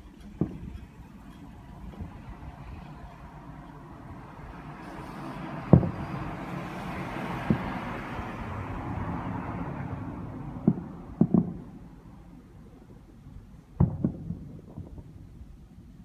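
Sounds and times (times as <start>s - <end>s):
rushing noise: 0.0s - 12.0s
fireworks booming: 0.0s - 15.9s.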